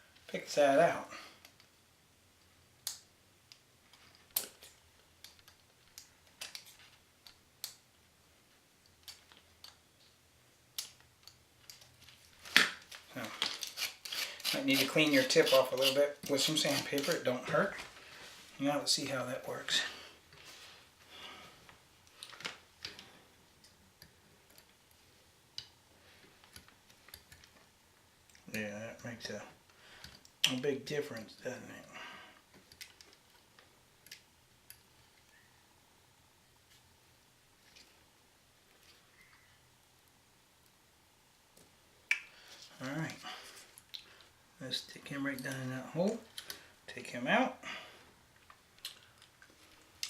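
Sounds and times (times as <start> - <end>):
small tools clicking and scratching: 2.8 - 7.8, 8.8 - 17.8, 25.6 - 27.7, 32.5 - 35.4.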